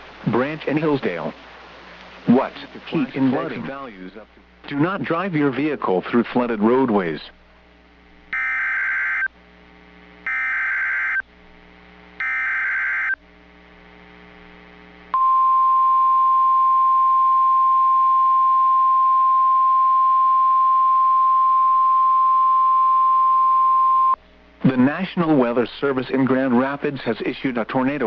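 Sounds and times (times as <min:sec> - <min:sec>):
steady warning alarm tone: 0:08.3 - 0:09.3, 0:10.2 - 0:11.2, 0:12.2 - 0:13.2
warbling digital data bursts: 0:12.2 - 0:13.2.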